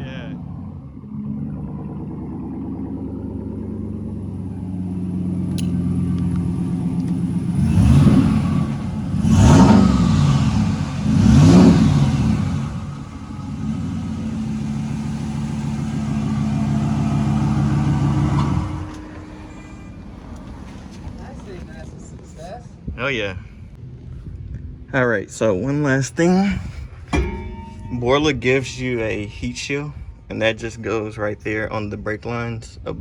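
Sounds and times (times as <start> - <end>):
engine idling and revving: 0.0 - 22.2.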